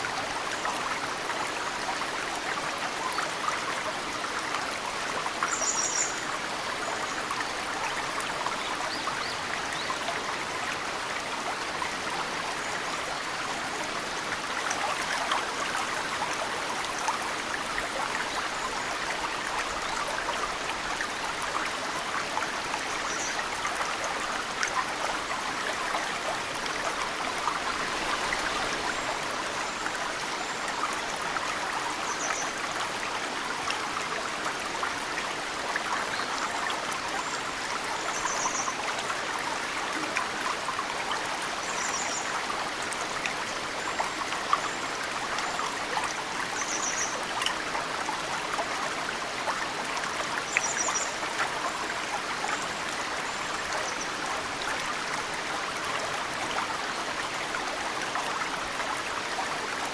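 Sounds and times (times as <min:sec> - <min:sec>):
mountain stream flowing: 0:00.0 - 0:59.9.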